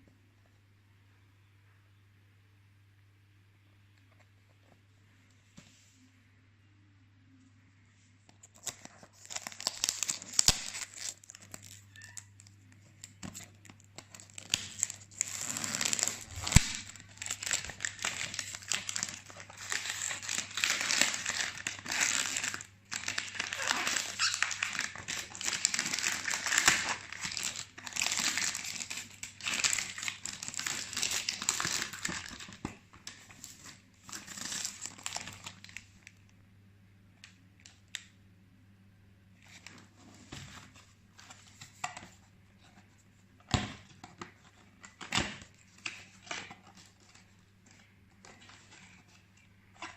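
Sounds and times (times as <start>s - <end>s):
plastic wrapping crinkling: 8.4s - 36.2s.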